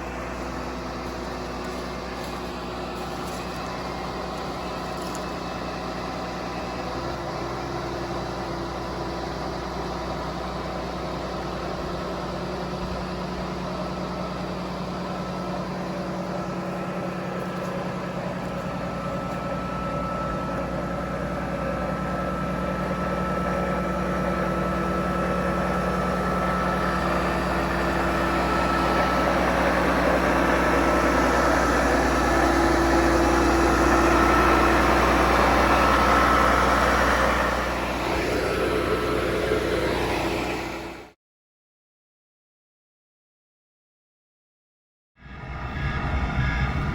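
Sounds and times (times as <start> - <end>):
road noise: 0.0 - 41.1, 45.2 - 46.9
truck engine running: 0.0 - 41.2
steady tones: 45.2 - 46.9.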